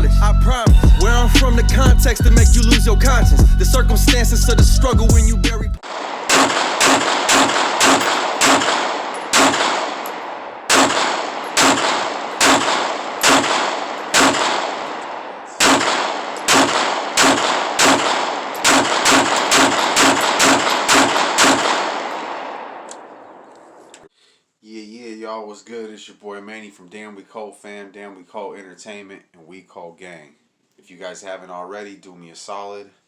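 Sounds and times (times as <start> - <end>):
gunshots with long echo: 5.8 - 23.9.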